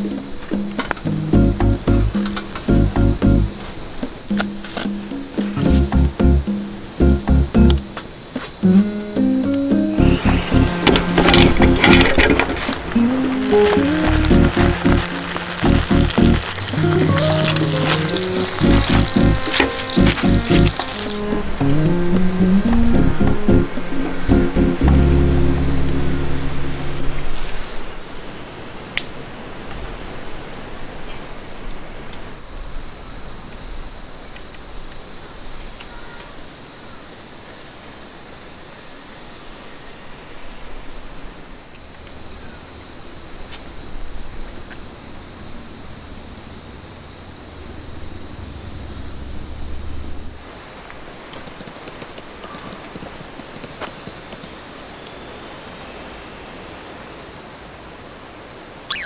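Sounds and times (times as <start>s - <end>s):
insects shrilling: 0.0s - 32.4s, 49.9s - 59.0s.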